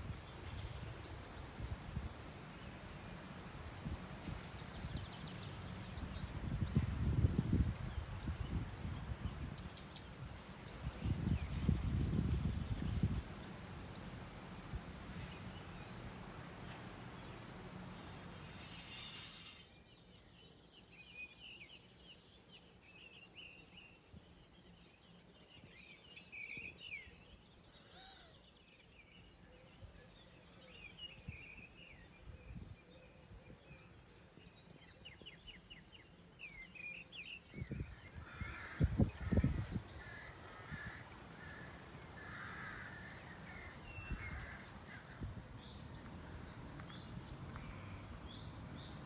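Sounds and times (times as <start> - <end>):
birds chirping: 33.2 - 49.0.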